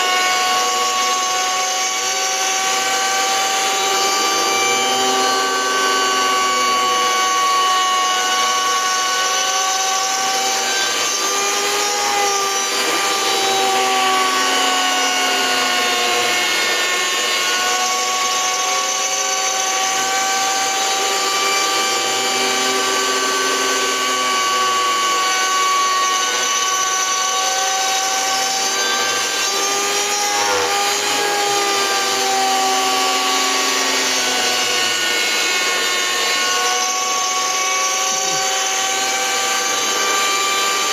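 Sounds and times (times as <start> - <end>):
rotary tool whining while milling wood: 0.0 - 40.9.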